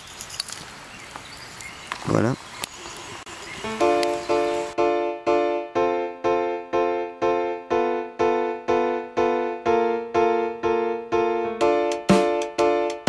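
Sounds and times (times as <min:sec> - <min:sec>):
keyboard playing repeated chords: 0:03.6 - 0:13.0.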